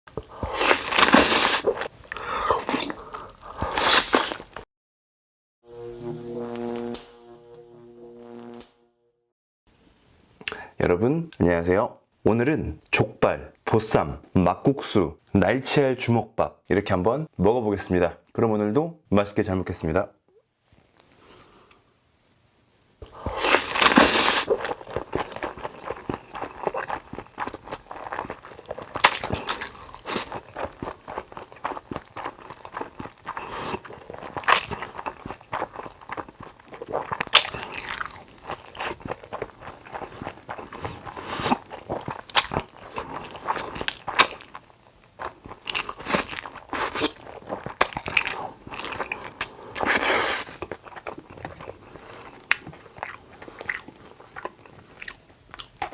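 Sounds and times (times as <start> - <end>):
person chewing crunchy food: 0.1 - 4.6, 23.0 - 55.9.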